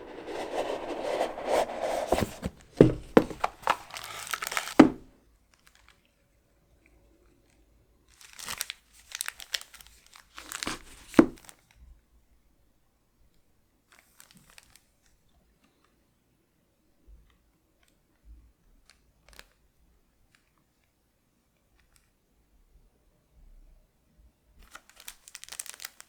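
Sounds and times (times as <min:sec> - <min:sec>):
packaging crinkling and tearing: 0:02.1 - 0:05.0, 0:08.2 - 0:11.5, 0:24.8 - 0:26.0.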